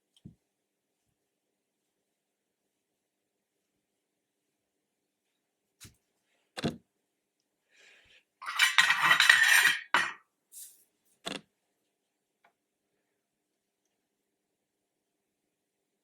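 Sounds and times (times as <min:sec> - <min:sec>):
metal objects knocking: 0:08.4 - 0:10.2
metal objects clinking and rattling: 0:08.4 - 0:10.7.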